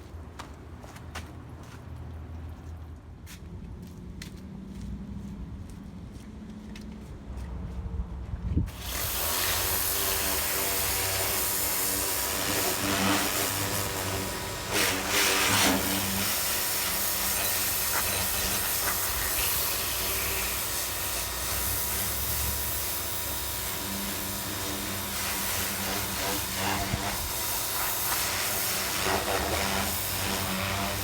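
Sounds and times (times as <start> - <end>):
motor hum: 8.7 - 31.0
pressure washer spraying water: 8.7 - 31.0.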